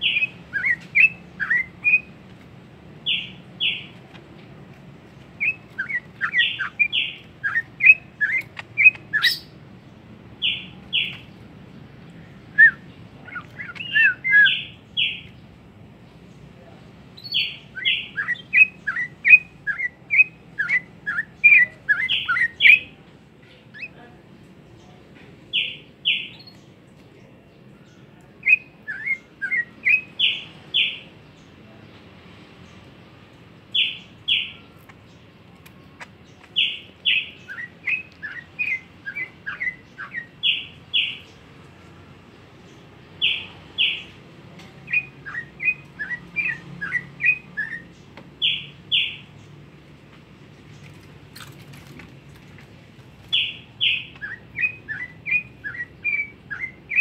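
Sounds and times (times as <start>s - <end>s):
songbird singing whistles and chirps: 0.0s - 2.2s, 5.4s - 9.6s, 10.4s - 11.4s, 12.0s - 15.5s, 17.2s - 23.0s, 25.5s - 31.5s, 33.7s - 41.5s, 42.6s - 49.6s, 53.3s - 57.0s.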